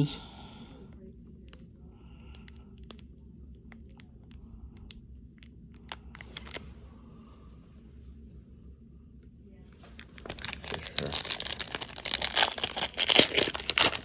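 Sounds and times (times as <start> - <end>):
trading cards clicking and rustling: 1.4 - 6.7, 9.9 - 14.0.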